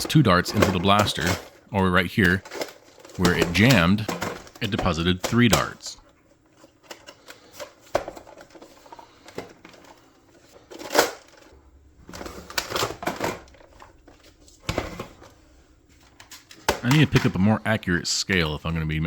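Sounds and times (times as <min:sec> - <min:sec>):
clicks and knocks of objects handled: 0:00.0 - 0:01.6, 0:02.2 - 0:15.3.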